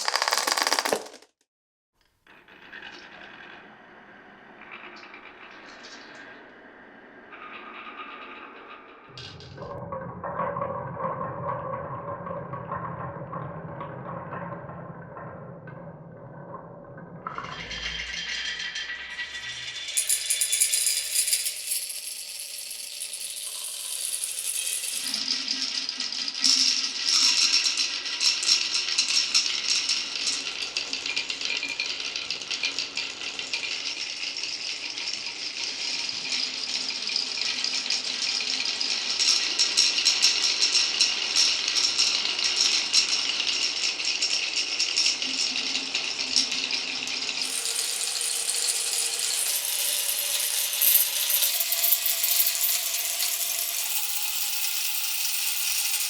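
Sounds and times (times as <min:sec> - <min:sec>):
marbles clattering down wooden run: 0:00.0 - 0:01.3, 0:19.9 - 0:25.5, 0:47.4 - 0:56.0.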